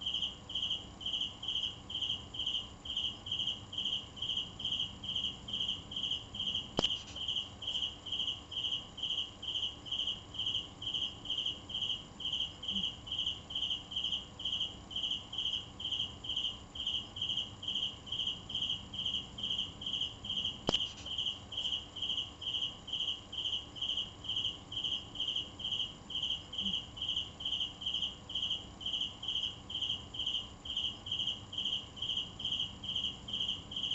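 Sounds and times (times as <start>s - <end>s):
cricket chirping: 0.0s - 33.9s
sharp click: 6.8s - 7.2s, 20.6s - 21.1s.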